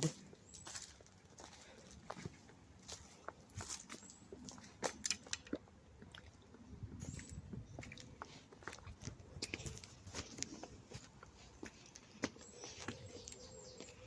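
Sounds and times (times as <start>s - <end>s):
footsteps crunching through twigs: 0.0s - 5.2s.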